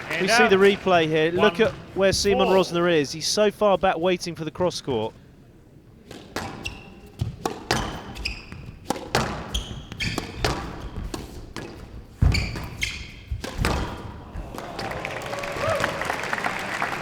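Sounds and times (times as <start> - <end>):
applause: 0.0 - 1.6, 14.4 - 17.0
squash ball cracking off rackets: 6.0 - 15.0
shoe squeaks on court floor: 6.1 - 14.3
ball thudding against walls: 6.1 - 15.0.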